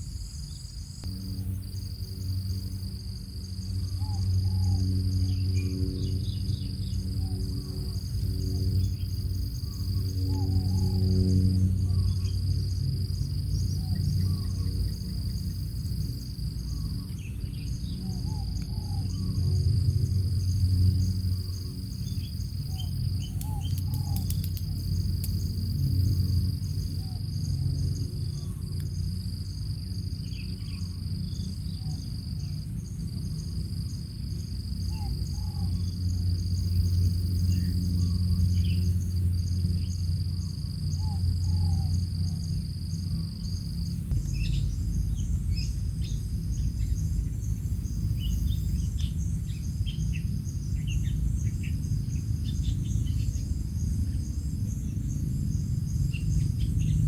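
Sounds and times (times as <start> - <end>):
insect trilling: 0.4 - 57.0
soft bird chirps: 21.5 - 25.5
low rumble: 30.9 - 57.0.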